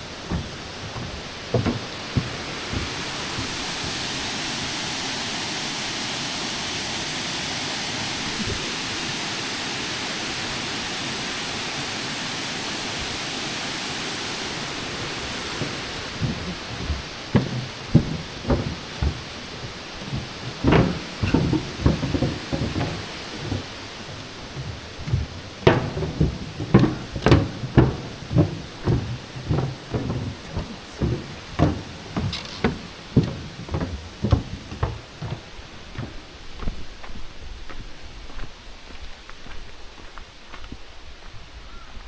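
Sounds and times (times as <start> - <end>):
irregular knocks and thumps: 0.0 - 4.2, 15.3 - 37.2
steady rushing noise: 0.0 - 39.1.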